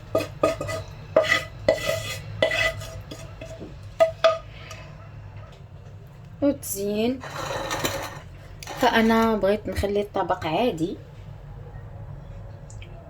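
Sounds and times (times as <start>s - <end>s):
utensil scraping a pan: 0.0s - 4.4s, 7.2s - 9.5s.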